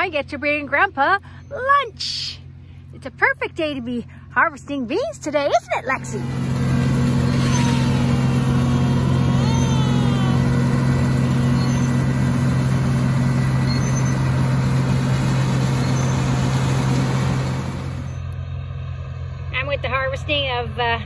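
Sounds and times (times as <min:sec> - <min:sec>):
vehicle engine droning: 0:00.0 - 0:21.0
high warbling tone: 0:07.2 - 0:12.6.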